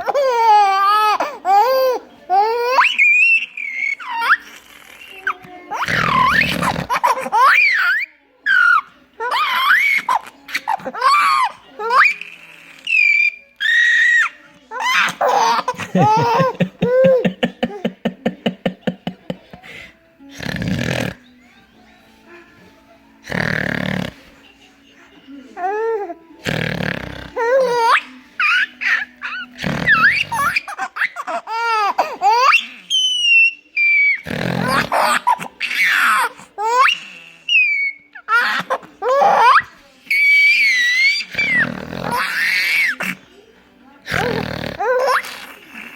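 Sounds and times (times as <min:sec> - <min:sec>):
baby laughing: 0:00.0 - 0:07.9, 0:14.8 - 0:19.4, 0:27.4 - 0:39.7
baby squealing: 0:27.4 - 0:43.0.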